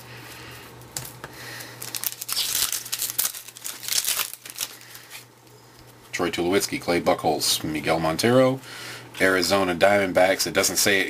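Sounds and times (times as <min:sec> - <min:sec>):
plastic wrapper tearing and crinkling: 0:01.6 - 0:05.3.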